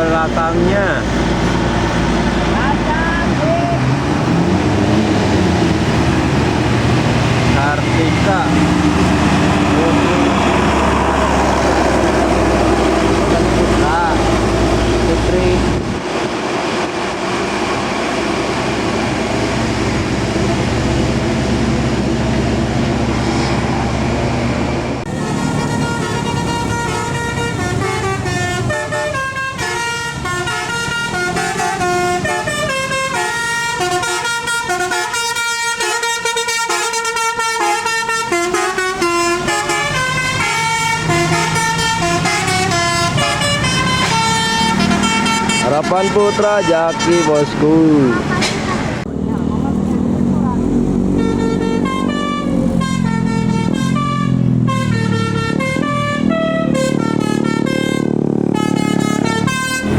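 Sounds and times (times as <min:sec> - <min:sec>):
bus engine running: 0:00.0 - 0:59.9
multi-tone bus horn melody: 0:25.1 - 0:49.0, 0:49.6 - 0:59.9.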